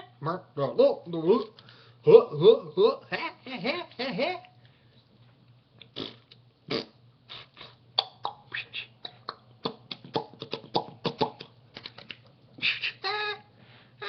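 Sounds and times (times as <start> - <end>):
man beatboxing clicks and pops: 5.8 - 13.0.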